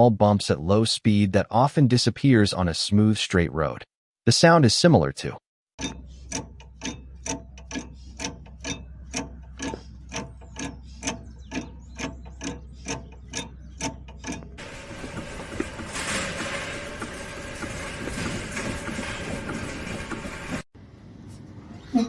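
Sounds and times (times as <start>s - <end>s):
hollow knocking: 5.8s - 20.6s
road noise rumble: 5.8s - 21.6s.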